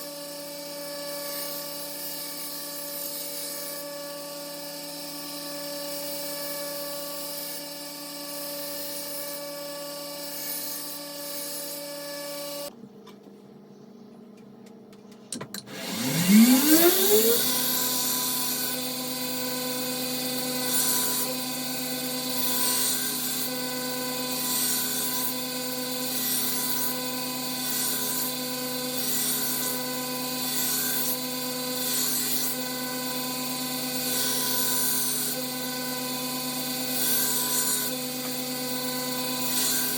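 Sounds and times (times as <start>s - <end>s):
belt grinder motor whine: 15.6s - 39.9s.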